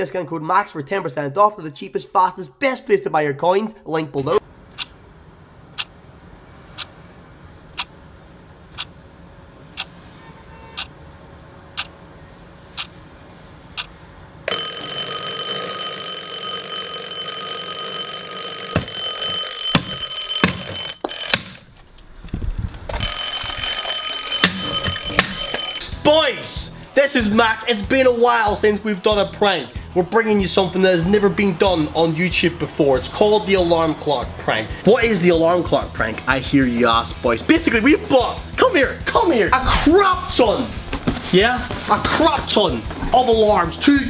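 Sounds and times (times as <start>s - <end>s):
alarm clock ringing: 14.5s - 21.7s, 23.0s - 25.9s
clock ticking: 17.6s - 21.5s, 23.3s - 25.9s.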